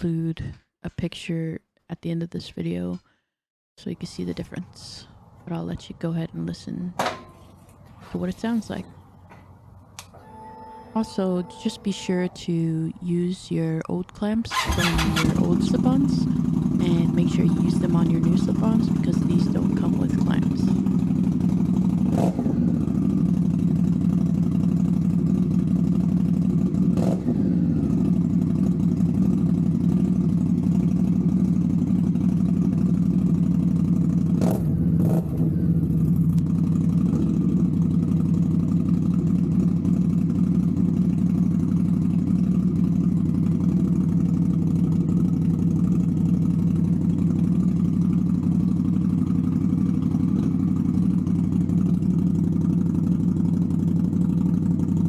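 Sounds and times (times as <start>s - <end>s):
engine throttle blips: 3.8s - 55.0s
motorcycle engine idling: 14.5s - 55.0s.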